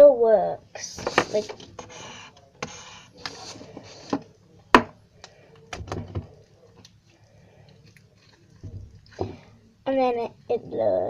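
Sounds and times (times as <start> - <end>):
marker rubbing on slime: 0.8 - 4.2.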